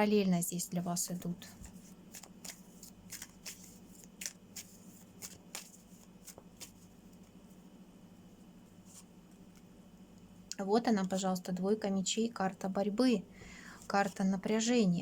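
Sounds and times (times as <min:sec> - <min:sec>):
faint steady hum: 0:00.0 - 0:15.0
cards being shuffled: 0:01.6 - 0:07.4.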